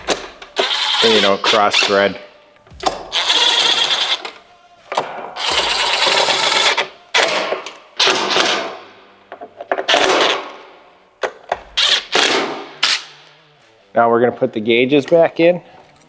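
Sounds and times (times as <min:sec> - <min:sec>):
cordless driver running: 0:00.0 - 0:02.0, 0:02.8 - 0:04.4.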